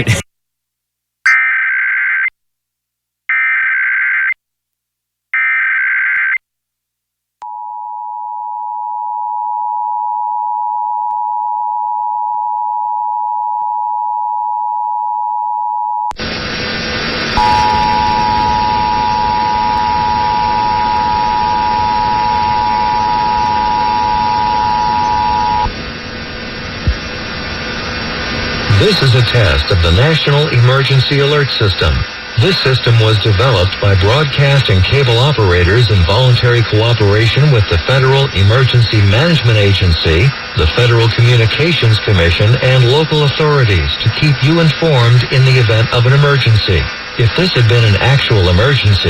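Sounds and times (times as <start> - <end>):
static broadcast hiss: 16.2 - 49.0
digital data bursts: 17.2 - 25.7, 27.0 - 49.0
two-tone attention signal: 17.4 - 25.7.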